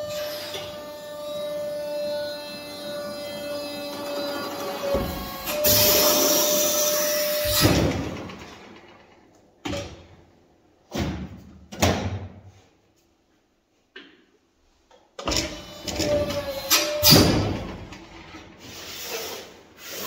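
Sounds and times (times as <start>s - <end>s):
loud scraping on metal: 0.0s - 9.0s.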